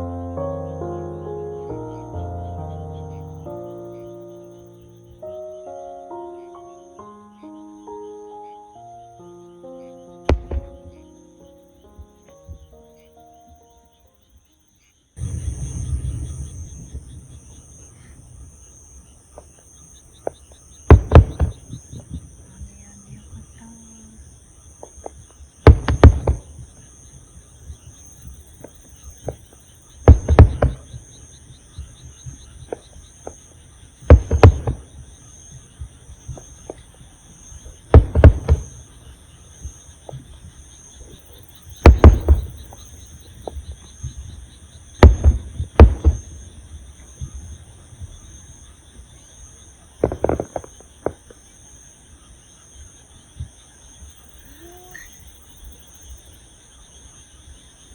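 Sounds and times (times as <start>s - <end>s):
insects chirping: 0.0s - 57.9s
fireworks bursting with booms: 10.2s - 12.8s, 15.2s - 23.4s, 24.8s - 51.7s.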